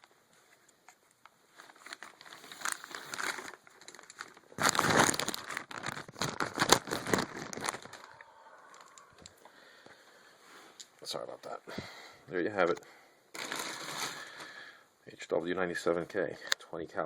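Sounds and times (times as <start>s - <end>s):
packing material crinkling: 1.0s - 9.5s, 13.3s - 14.6s.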